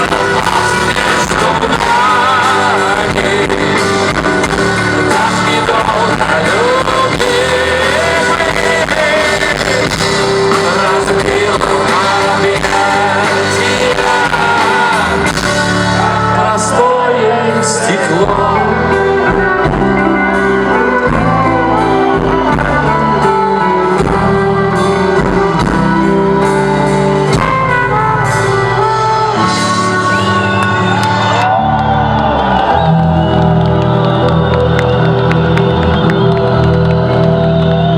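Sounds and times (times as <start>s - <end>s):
person singing: 0.0s - 30.4s
bass guitar: 0.0s - 37.9s
drums: 0.0s - 37.9s
electric guitar: 0.0s - 37.9s.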